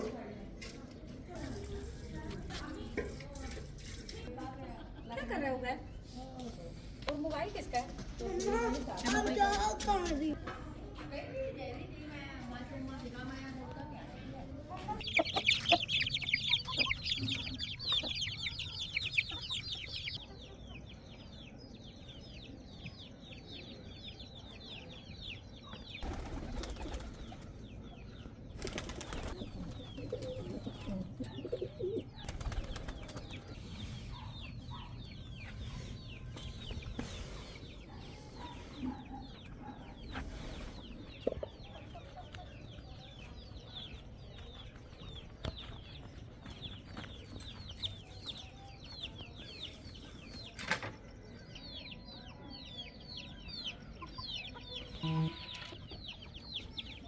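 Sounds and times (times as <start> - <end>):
small birds chirping: 0.0 - 57.0.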